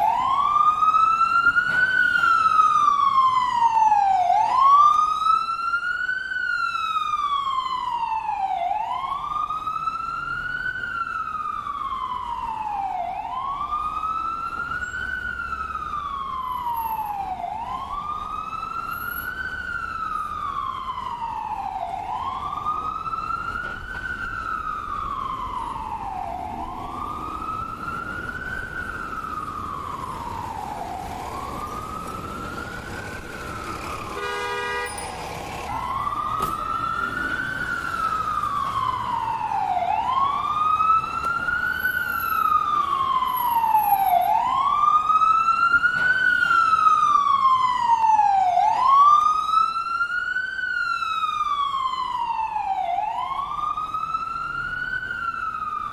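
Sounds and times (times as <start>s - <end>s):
ambulance siren wailing: 0.0s - 55.9s
short horn blast: 34.2s - 35.2s.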